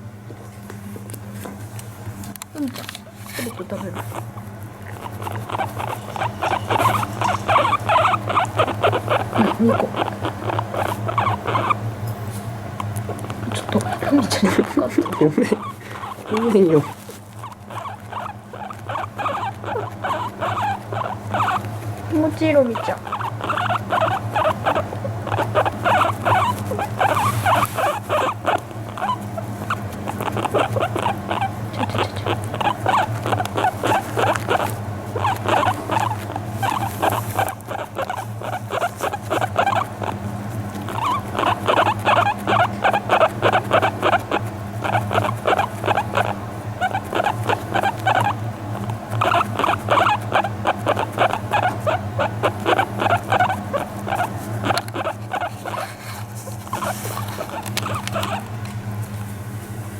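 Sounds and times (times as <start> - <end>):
guinea pig calling: 3.4 - 11.9, 12.8 - 58.5.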